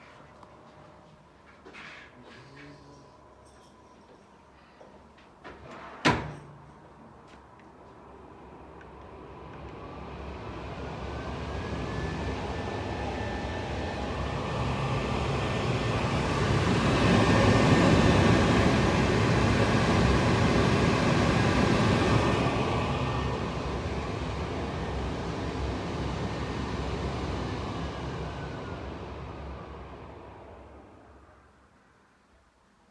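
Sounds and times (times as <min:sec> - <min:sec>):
extractor fan motor whine: 0:09.2 - 0:31.3.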